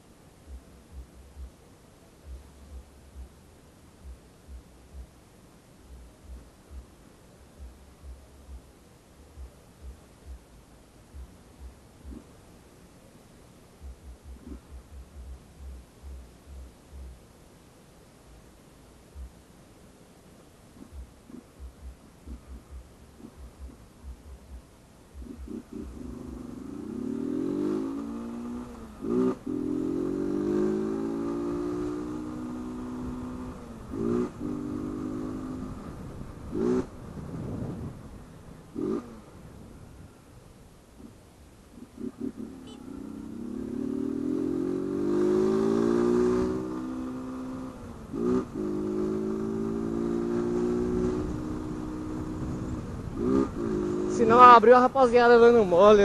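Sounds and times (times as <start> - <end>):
motorcycle engine under throttle: 25.2 - 39.4, 41.8 - 54.9.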